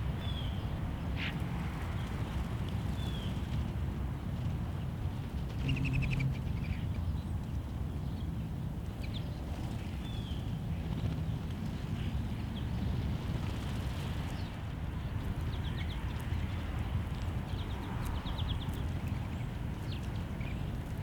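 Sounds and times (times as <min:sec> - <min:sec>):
steady low rumble: 0:14.6 - 0:21.0.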